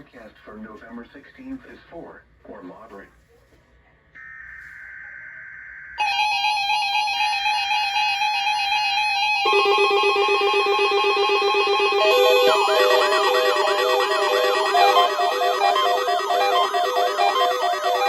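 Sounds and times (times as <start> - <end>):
loud multi-tone alarm: 4.2 - 18.0
steady high alert tone: 4.2 - 18.0.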